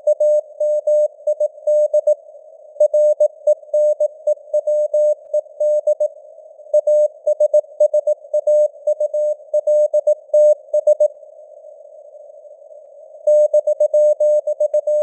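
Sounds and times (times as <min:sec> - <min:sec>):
morse code beeps: 0:13.3 - 0:15.0.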